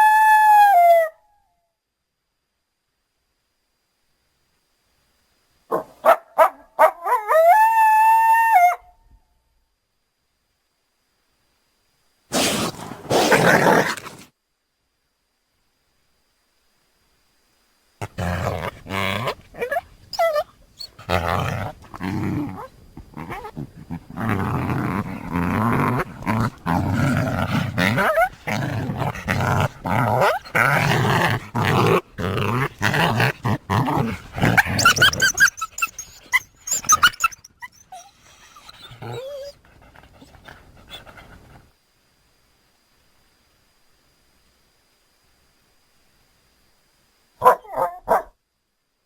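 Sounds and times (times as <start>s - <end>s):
rough choppy creature calls: 12.3s - 14.3s, 21.0s - 39.2s.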